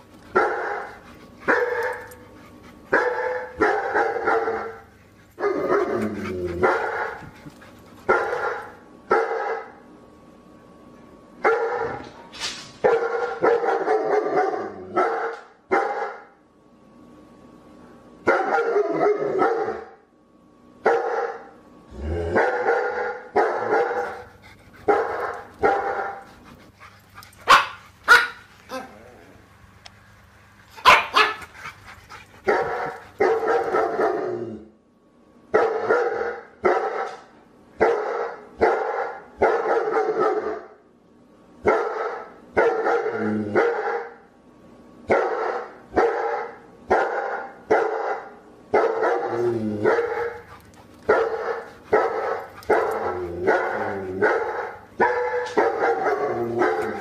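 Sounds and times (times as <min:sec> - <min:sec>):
dog barking: 0:00.4 - 0:02.1, 0:02.9 - 0:04.8, 0:08.1 - 0:09.8, 0:11.4 - 0:12.0, 0:12.8 - 0:16.3, 0:18.3 - 0:19.9, 0:20.8 - 0:21.5, 0:22.4 - 0:24.2, 0:24.9 - 0:26.2, 0:27.4 - 0:28.9, 0:30.8 - 0:31.5, 0:35.6 - 0:40.7, 0:41.6 - 0:44.2, 0:45.1 - 0:50.4, 0:51.1 - 0:57.0.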